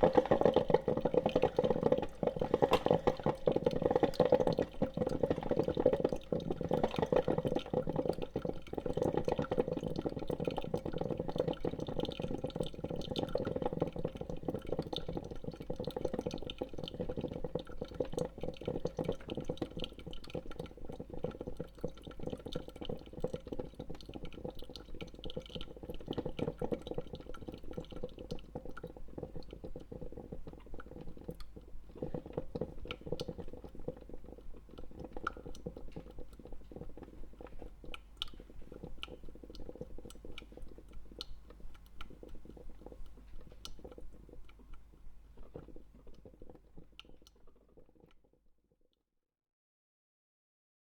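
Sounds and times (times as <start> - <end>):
coffee dripping and crackling: 0.0 - 48.5.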